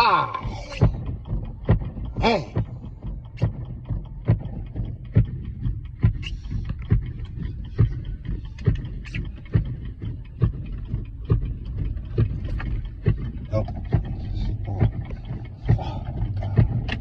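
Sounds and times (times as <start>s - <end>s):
vehicle interior rumble: 0.0s - 17.0s.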